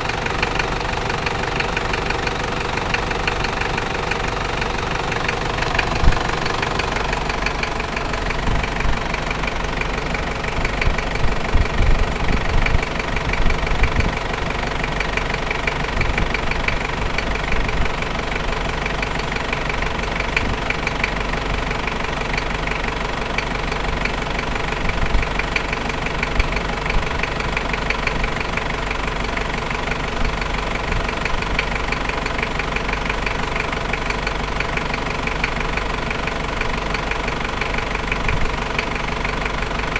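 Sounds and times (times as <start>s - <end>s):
fast even ticking: 0.0s - 21.2s
diesel engine idling: 0.0s - 39.9s
engine bumps: 0.0s - 39.9s.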